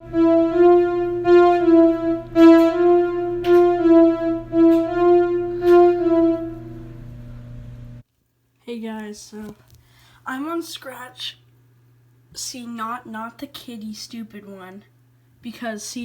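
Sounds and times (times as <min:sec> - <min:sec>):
electronic keyboard melody: 0:00.0 - 0:06.8
steady low hum: 0:00.0 - 0:08.0.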